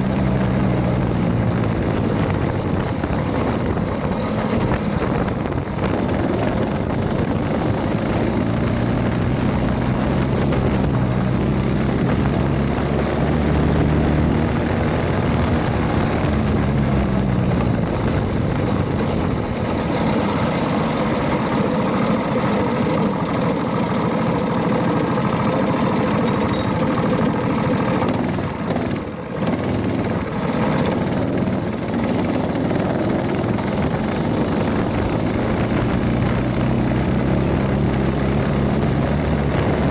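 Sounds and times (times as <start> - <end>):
small engine running under load: 0.0 - 39.9.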